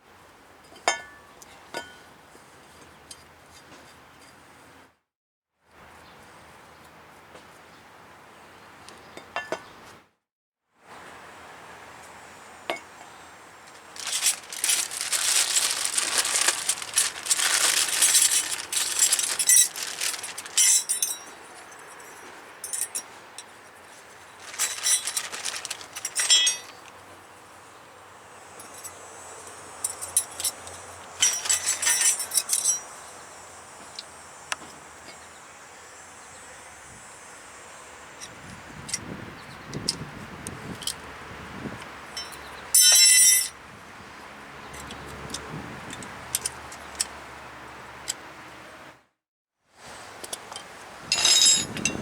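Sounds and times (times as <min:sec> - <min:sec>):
metal brake parts clinking: 0:13.8 - 0:21.3, 0:24.4 - 0:26.9, 0:31.2 - 0:32.9, 0:50.5 - 0:52.0.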